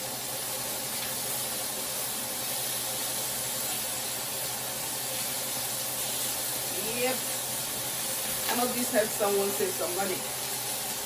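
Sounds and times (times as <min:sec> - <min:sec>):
chicken sizzling in a grill pan: 0:00.0 - 0:11.0.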